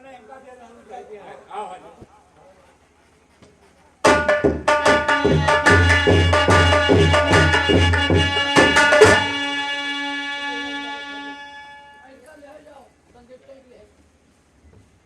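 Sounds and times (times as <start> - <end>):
hand drum strokes: 4.0 - 9.5.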